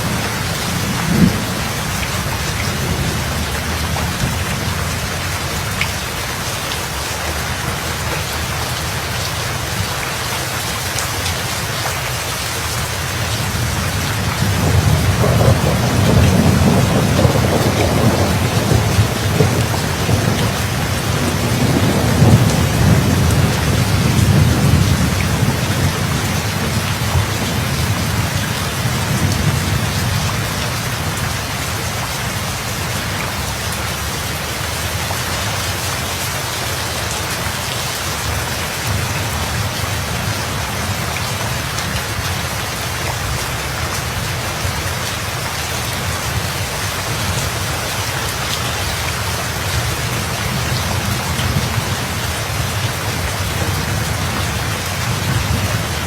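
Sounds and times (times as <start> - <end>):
thunder rumbling: 0.0 - 5.8, 13.3 - 33.8, 49.4 - 56.0
heavy rain hissing: 0.0 - 56.0.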